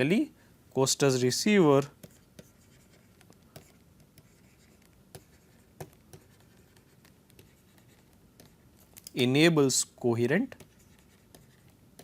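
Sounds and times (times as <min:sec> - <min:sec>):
pen writing and tapping: 0:01.9 - 0:09.0, 0:10.5 - 0:12.0.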